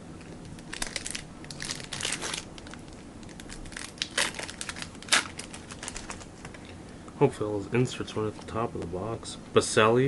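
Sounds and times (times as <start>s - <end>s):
packaging crinkling: 0.2s - 6.6s.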